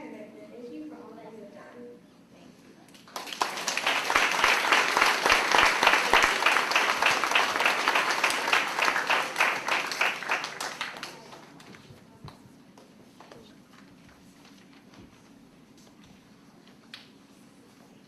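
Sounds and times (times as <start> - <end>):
audience applauding: 3.0 - 11.9.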